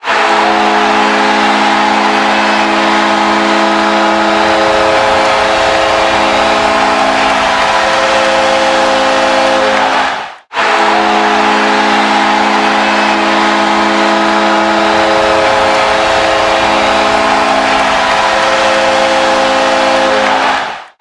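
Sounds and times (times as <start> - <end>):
arena goal horn blast: 0.0 - 21.0.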